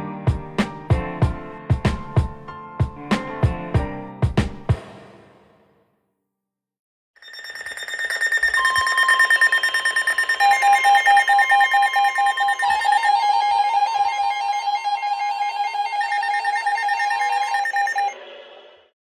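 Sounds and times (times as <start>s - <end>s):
steady warning alarm tone: 7.2s - 14.2s, 15.0s - 18.2s.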